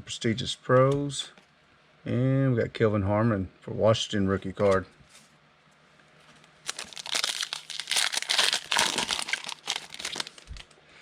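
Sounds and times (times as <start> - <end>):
foil wrapper crinkling: 6.6 - 10.7.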